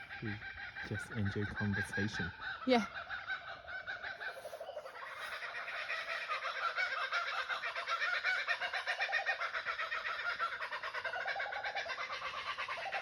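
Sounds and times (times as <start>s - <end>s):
kookaburras laughing chorus: 0.0s - 13.0s.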